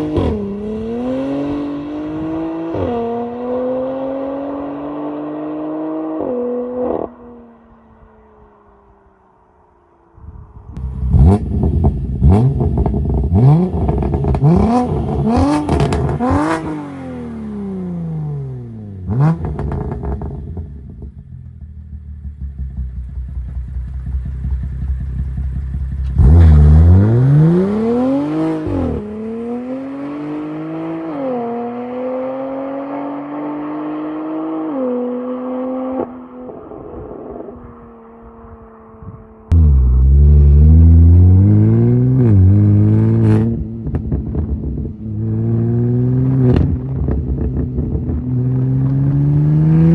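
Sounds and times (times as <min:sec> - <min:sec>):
car engine revving: 0:10.8 - 0:49.9
exhaust crackles and pops: 0:43.8 - 0:44.9.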